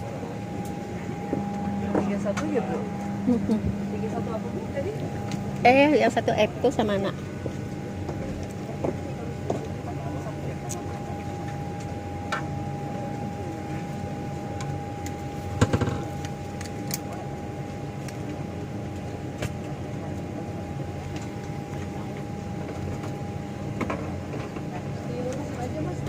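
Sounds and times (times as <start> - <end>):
thin whine: 0.0 - 17.9
airliner cabin hum: 0.0 - 26.0.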